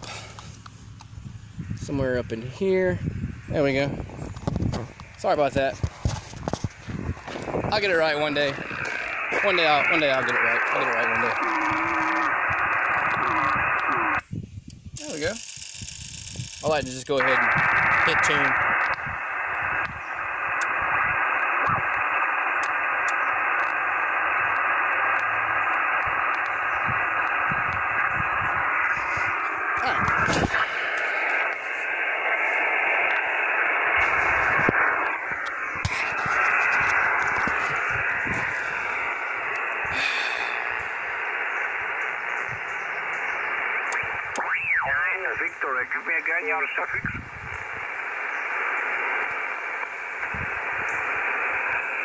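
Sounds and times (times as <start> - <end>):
radio static hiss: 0.0 - 52.0
radio whistle rising and falling: 6.5 - 14.2, 15.0 - 52.0.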